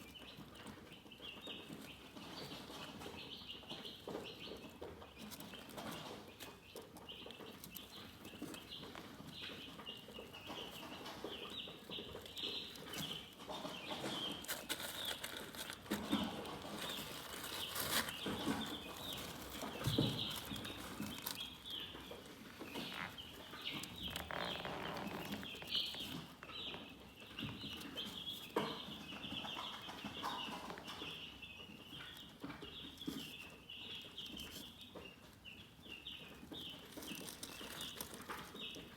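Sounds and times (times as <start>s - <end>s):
chicks chirping: 0.0s - 38.9s
rustling: 5.2s - 26.4s, 36.4s - 38.9s.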